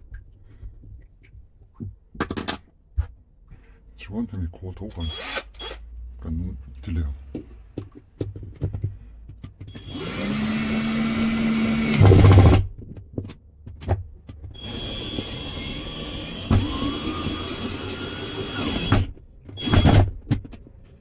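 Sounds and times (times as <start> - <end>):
handling knocks and clicks: 0.0 - 3.2, 7.2 - 9.9, 12.6 - 14.6, 19.2 - 21.0.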